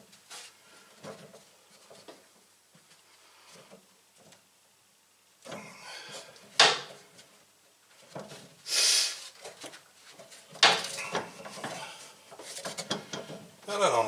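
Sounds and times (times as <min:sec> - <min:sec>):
scrape or rustle: 0:00.1 - 0:00.6, 0:07.9 - 0:10.5.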